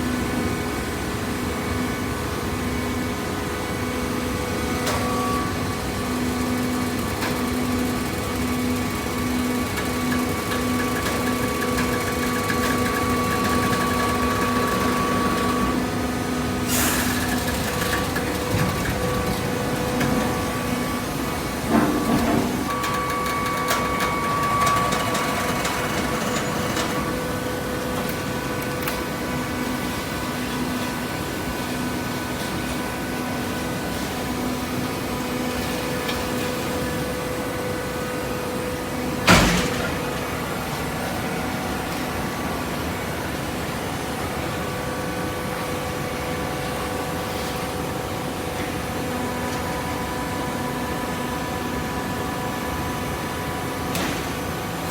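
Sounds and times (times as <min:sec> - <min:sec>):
baling press machine hum: 0:00.0 - 0:54.9
machine knocks: 0:39.3 - 0:40.3.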